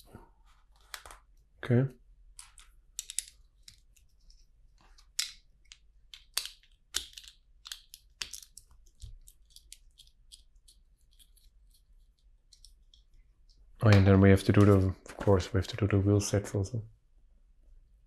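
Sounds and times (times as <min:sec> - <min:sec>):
sharp plastic snaps: 0:05.0 - 0:10.5.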